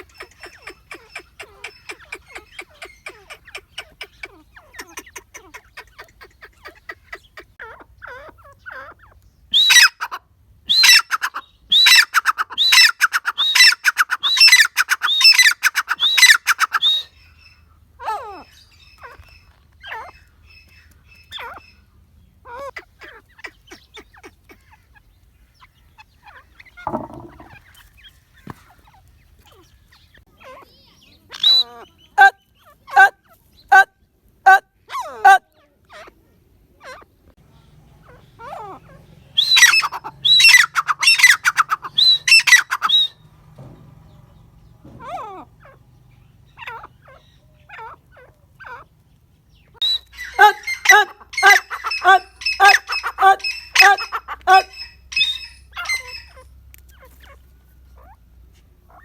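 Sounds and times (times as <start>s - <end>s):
francolin calling: 23.5s - 27.9s, 38.0s - 43.3s, 49.5s - 56.4s.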